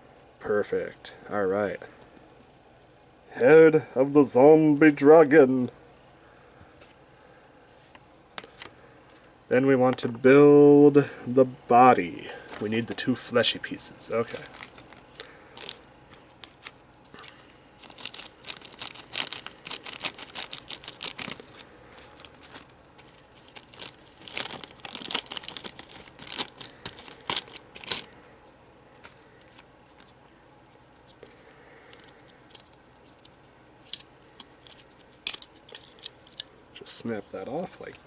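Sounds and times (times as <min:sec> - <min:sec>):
plastic packaging crinkling: 0:14.1 - 0:28.2, 0:28.9 - 0:36.5.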